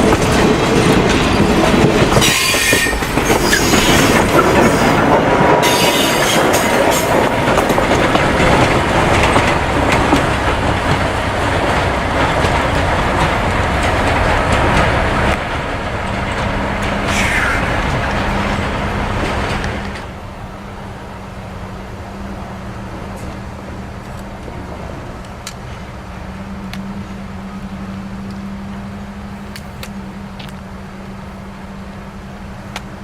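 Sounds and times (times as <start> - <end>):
train wheels clicking over rail joints: 0.0 - 20.2
high wheel squeals: 2.1 - 5.0, 5.6 - 7.0.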